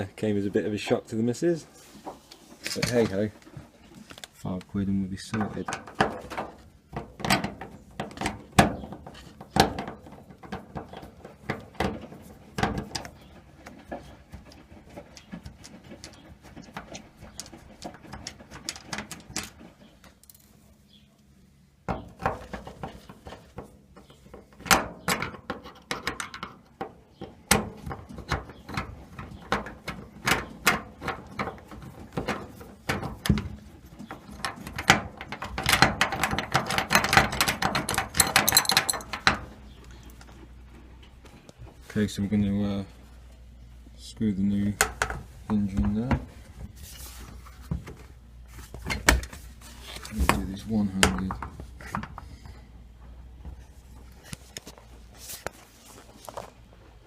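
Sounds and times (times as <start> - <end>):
small metal parts rattling: 27.8 - 40.1.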